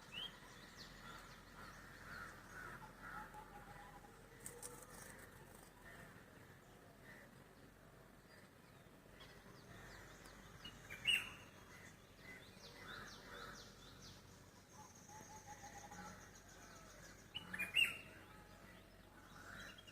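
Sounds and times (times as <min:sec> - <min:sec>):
birds singing and trilling: 0:00.0 - 0:19.9
sharp bird calls: 0:14.8 - 0:19.9.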